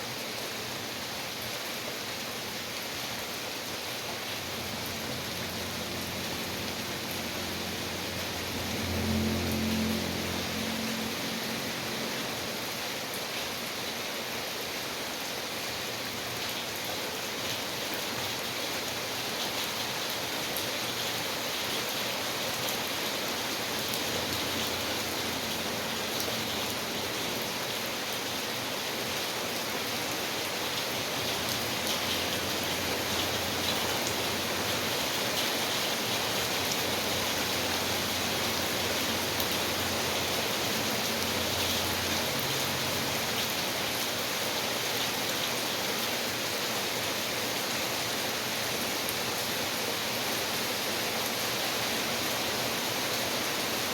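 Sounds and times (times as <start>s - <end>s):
steady rain falling: 0.0s - 53.9s.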